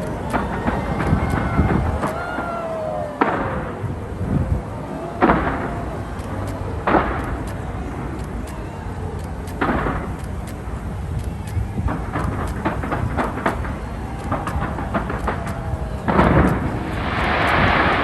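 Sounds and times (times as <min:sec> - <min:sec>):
steady low rumble: 0:00.0 - 0:02.4, 0:03.2 - 0:18.0
falling firework whistle: 0:00.0 - 0:04.0, 0:05.0 - 0:07.2, 0:11.9 - 0:18.0
fireworks bangs: 0:00.0 - 0:08.5, 0:09.5 - 0:10.7, 0:11.6 - 0:18.0.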